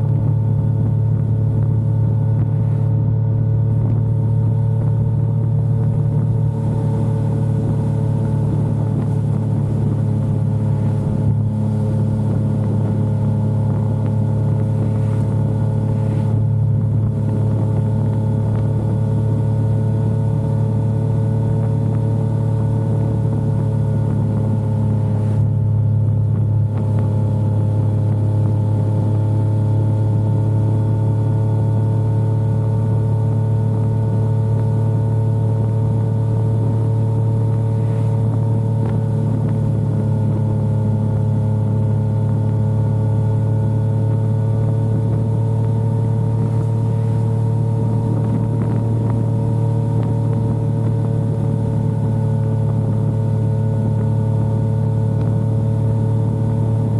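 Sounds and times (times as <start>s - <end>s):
motorcycle engine cruising: 0.0s - 56.9s.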